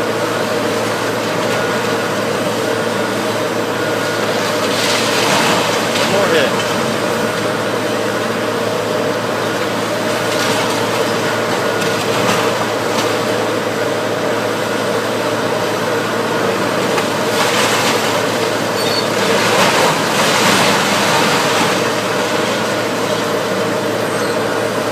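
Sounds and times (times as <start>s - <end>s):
engine running: 0.0s - 24.9s.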